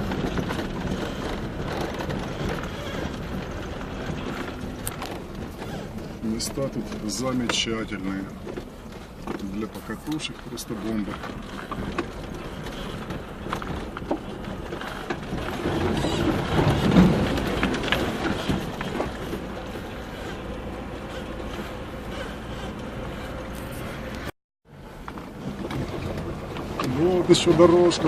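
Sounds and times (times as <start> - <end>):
car engine driving: 0.0 - 28.0
road noise on rough track: 0.0 - 28.0.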